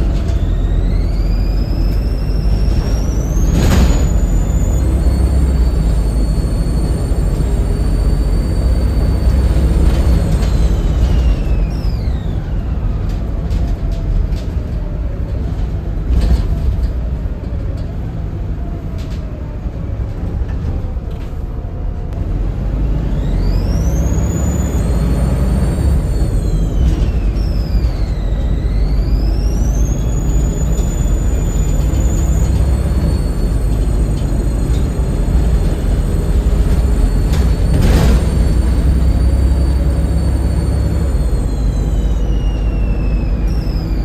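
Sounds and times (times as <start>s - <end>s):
high turbo whistle: 0.0s - 12.4s, 23.0s - 44.0s
bus diesel engine rumble: 0.0s - 44.0s.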